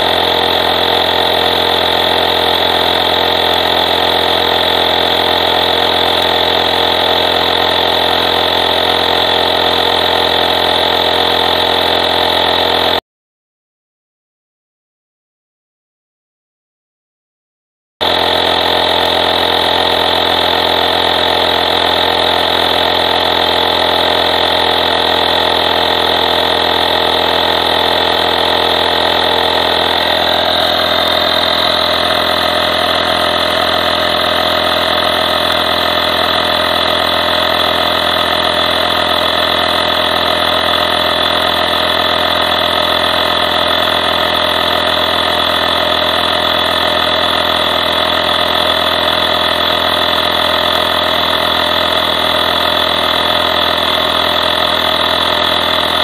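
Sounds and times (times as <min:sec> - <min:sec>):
portable air compressor buzzing: 0:00.0 - 0:13.0, 0:18.0 - 0:56.0.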